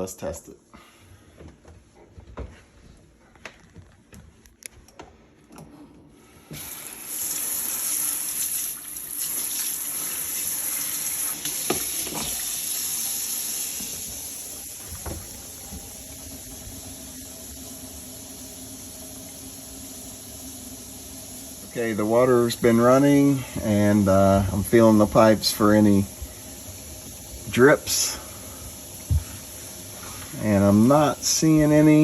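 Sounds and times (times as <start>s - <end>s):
faucet water running into sink: 6.5s - 32.0s.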